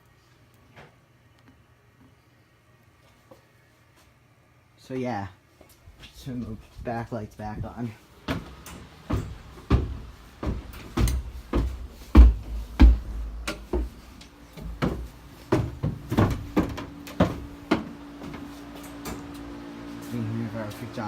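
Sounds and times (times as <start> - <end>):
steady low hum: 0.0 - 21.0
heavy thumps: 7.6 - 18.5
irregular knocks and clicks: 8.3 - 18.4.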